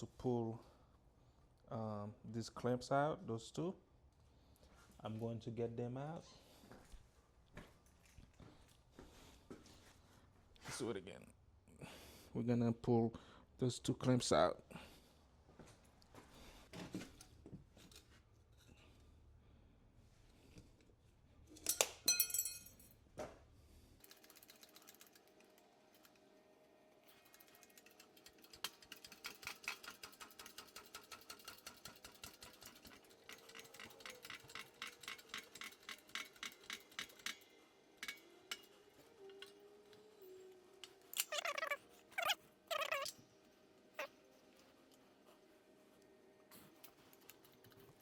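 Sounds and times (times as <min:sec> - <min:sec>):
metal tools clinking: 0:21.5 - 0:23.0, 0:40.8 - 0:43.2.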